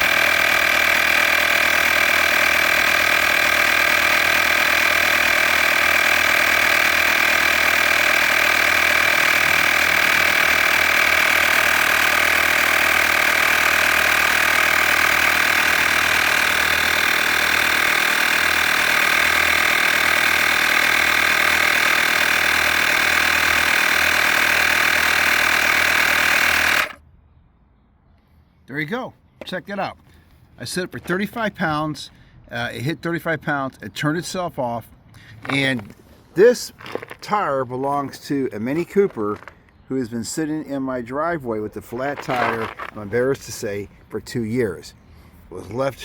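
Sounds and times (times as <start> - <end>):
air compressor running: 0.0 - 27.0, 35.3 - 37.3, 41.8 - 44.0.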